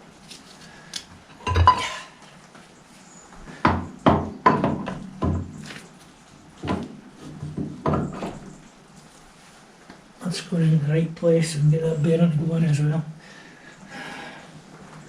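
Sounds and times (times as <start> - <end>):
metal parts knocking and clunking: 1.4 - 2.0.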